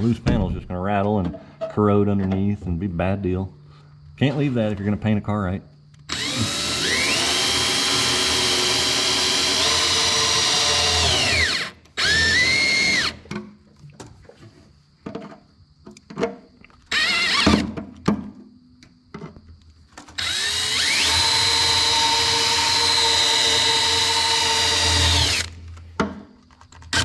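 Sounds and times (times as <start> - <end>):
power drill whining: 6.1 - 13.3, 16.9 - 17.6, 20.1 - 25.7.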